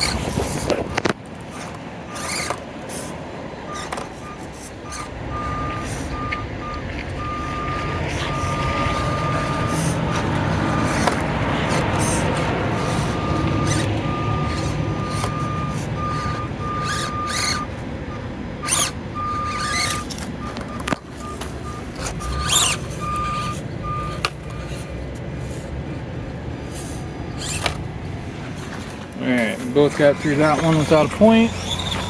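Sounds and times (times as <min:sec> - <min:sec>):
small electric motors whirring: 0:00.0 - 0:25.7, 0:26.5 - 0:29.0, 0:29.6 - 0:32.0
tires knocking on terrain: 0:00.0 - 0:32.0
high-pitched motor whine: 0:03.7 - 0:25.7.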